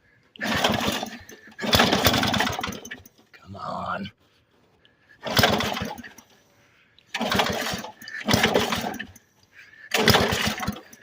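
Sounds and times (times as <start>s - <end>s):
lawnmower engine cranking: 0.4s - 3.3s, 5.2s - 6.4s, 7.1s - 11.0s.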